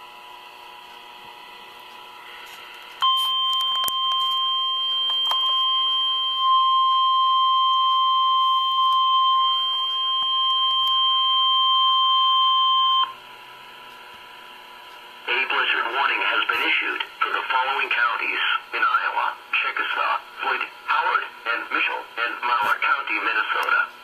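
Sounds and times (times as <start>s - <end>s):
steady alarm beep: 3.0s - 13.2s
radio hiss and static crackles: 13.8s - 24.0s.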